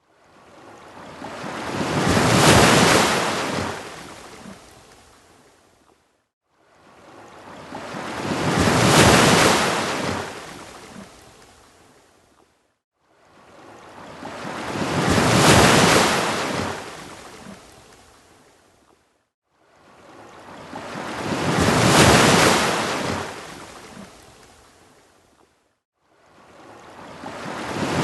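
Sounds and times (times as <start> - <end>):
ocean waves washing onto beach: 0.2 - 5.5, 6.6 - 12.0, 13.2 - 18.6, 19.6 - 25.0, 26.2 - 28.0.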